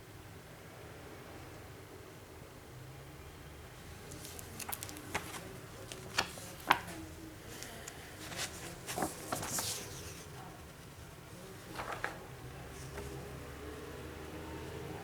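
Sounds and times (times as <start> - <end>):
packaging rustle: 4.0 - 10.5.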